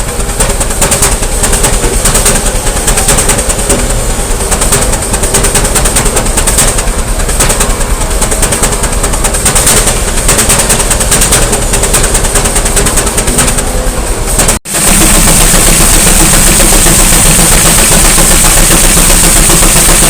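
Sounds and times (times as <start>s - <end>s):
steam engine exhaust beating: 0.0s - 20.0s
steady high hiss: 14.7s - 20.0s.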